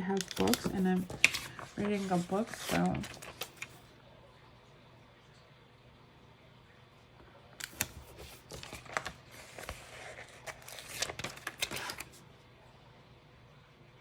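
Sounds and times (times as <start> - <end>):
paper sticker sheets crinkling: 0.0 - 3.8, 7.6 - 12.2.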